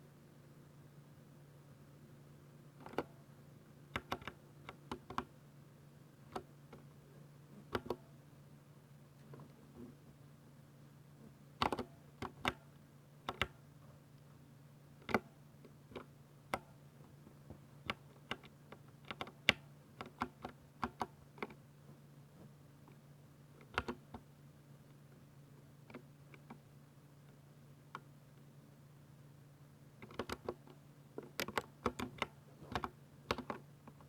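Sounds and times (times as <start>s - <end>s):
faint low hum: 0.0s - 34.0s
mechanical keyboard keystrokes: 4.0s - 5.3s, 11.6s - 12.6s, 13.3s - 13.6s, 17.9s - 21.6s, 30.0s - 30.6s, 31.3s - 33.6s.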